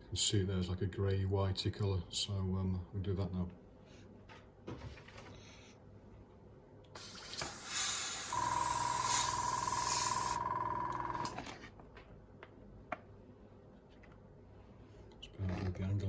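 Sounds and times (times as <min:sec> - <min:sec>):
airbrush spraying air hiss: 0:07.0 - 0:10.4
airbrush compressor humming: 0:07.0 - 0:11.4.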